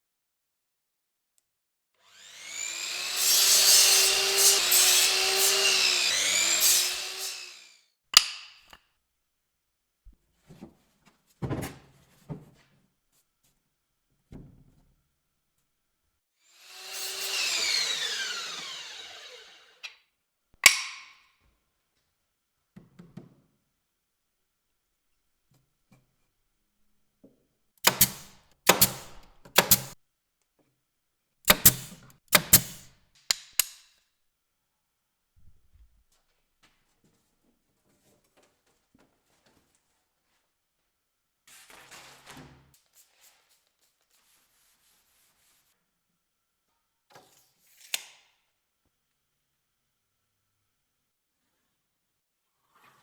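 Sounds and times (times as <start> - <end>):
power tool working wood: 2.0 - 7.8, 16.6 - 19.9, 27.8 - 30.0, 31.5 - 32.9
sharp clicks: 31.5 - 33.8.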